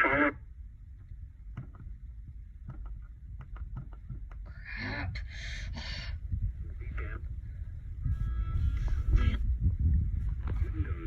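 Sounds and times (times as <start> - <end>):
wavering radio sound: 0.0 - 0.4, 6.7 - 7.3, 8.1 - 9.6, 10.6 - 11.0
static crackles: 0.0 - 0.5, 6.6 - 7.4, 8.1 - 11.0
low radio hum: 0.0 - 11.0.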